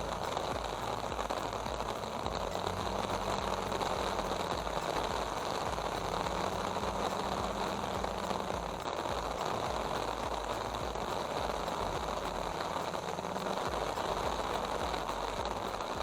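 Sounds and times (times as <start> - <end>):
bulldozer diesel engine running: 0.0 - 16.0
heavy rain hissing: 0.0 - 16.0.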